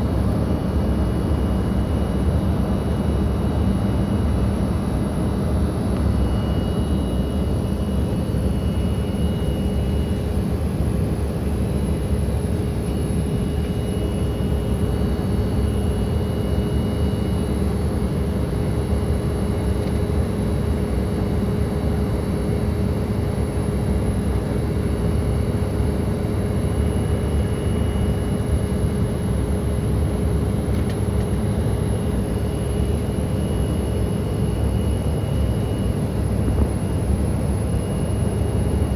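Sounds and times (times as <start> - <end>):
faint high whines: 0.0 - 17.6
steady mid-pitched hum: 0.0 - 19.4, 24.4 - 38.9.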